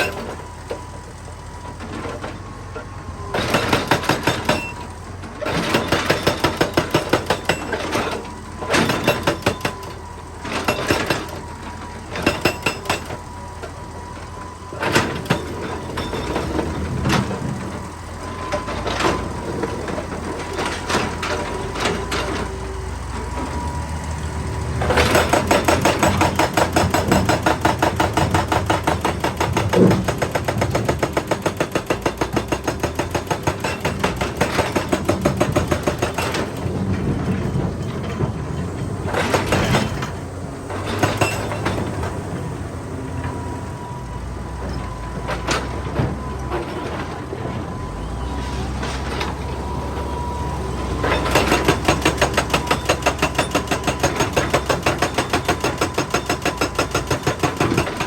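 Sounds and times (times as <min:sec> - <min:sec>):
hydraulic breaker hammering rock: 0:00.0 - 0:00.8, 0:03.3 - 0:13.8, 0:14.7 - 0:42.2, 0:51.0 - 0:58.0
excavator engine running: 0:00.0 - 0:58.0.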